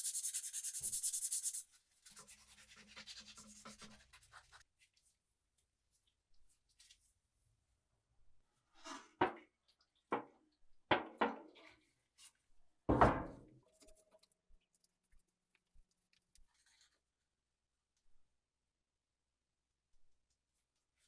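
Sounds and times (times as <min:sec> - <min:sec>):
parts knocking on workbench: 0:12.9 - 0:13.4.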